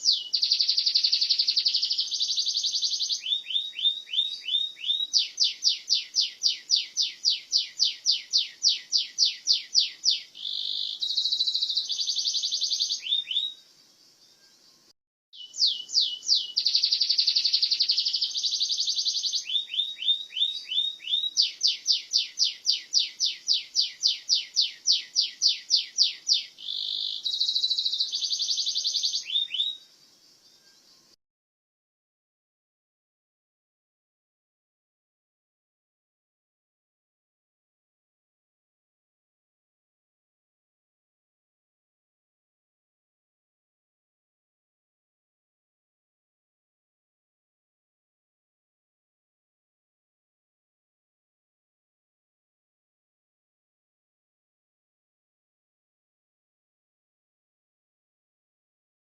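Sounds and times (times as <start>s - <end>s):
canary singing trills: 0.0s - 31.2s.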